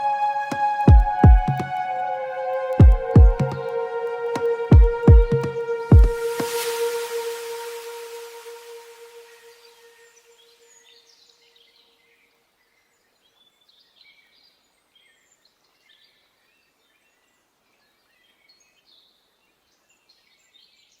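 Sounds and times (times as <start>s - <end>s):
electronic dance music tone: 0.6s - 9.7s.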